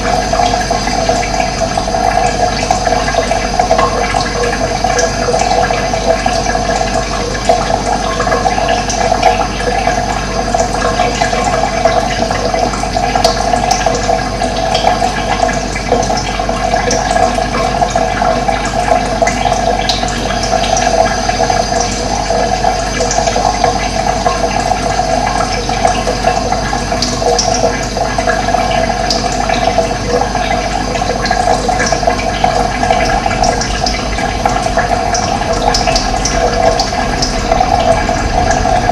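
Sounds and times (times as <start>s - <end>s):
running water rushing: 0.0s - 38.9s.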